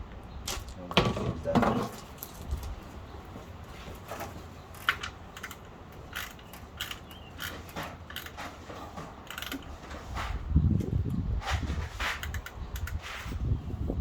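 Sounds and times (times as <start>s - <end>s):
small metal parts clinking: 4.7s - 8.4s, 9.2s - 9.7s.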